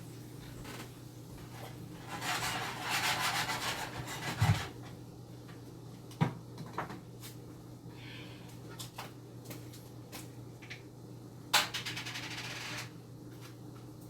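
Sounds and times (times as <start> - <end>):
garlic rasping scrape: 2.0 - 4.4.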